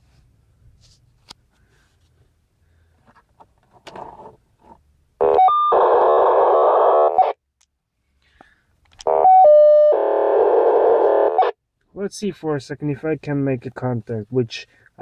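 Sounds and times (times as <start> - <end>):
buzzing warble signal: 9.1 - 11.6.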